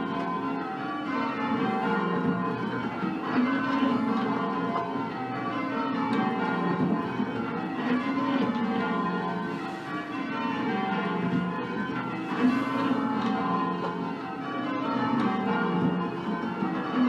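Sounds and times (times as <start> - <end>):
church bells change ringing: 0.0 - 17.0.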